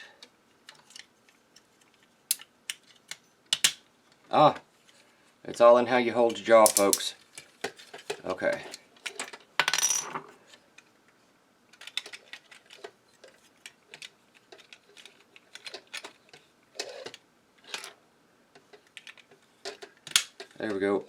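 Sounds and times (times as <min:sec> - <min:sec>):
plastic figure parts clicking: 0:00.7 - 0:03.8, 0:11.7 - 0:13.0, 0:13.6 - 0:16.4.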